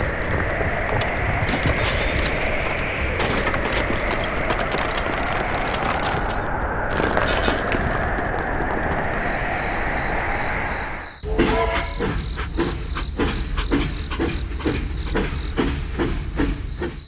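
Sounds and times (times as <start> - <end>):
gritty crackling and crunching: 0.0 - 9.2.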